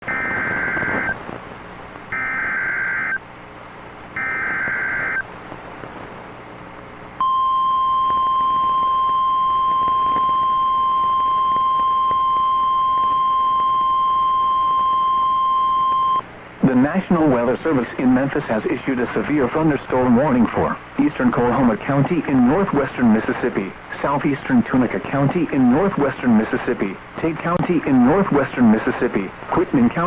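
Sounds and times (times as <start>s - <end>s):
steady warning alarm tone: 2.1s - 3.2s, 4.2s - 5.2s, 7.2s - 16.2s.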